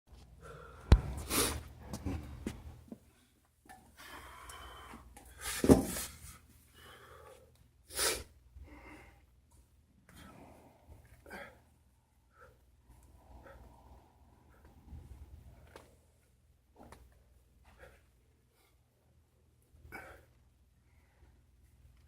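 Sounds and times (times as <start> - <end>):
person breathing hard: 0.4 - 2.6, 4.0 - 9.3.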